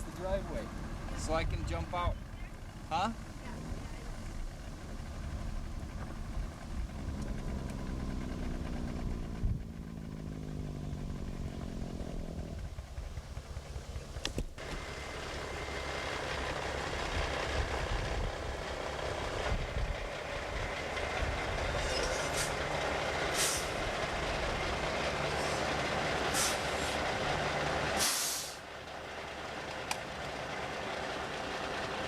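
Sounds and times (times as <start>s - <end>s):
diesel engine running: 0.0s - 32.0s
air brake hisses: 21.8s - 22.6s, 23.3s - 23.8s, 26.3s - 27.0s, 28.0s - 28.6s.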